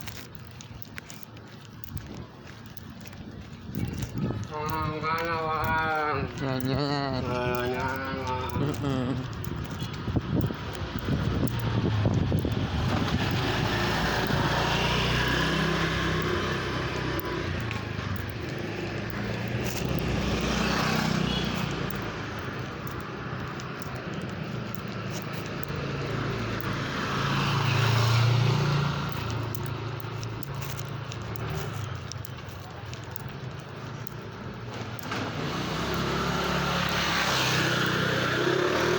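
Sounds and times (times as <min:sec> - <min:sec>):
vehicles passing: 0:00.0 - 0:38.9.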